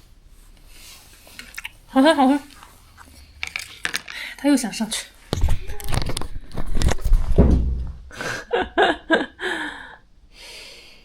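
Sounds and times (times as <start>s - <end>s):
thumps and knocks: 5.3s - 8.1s.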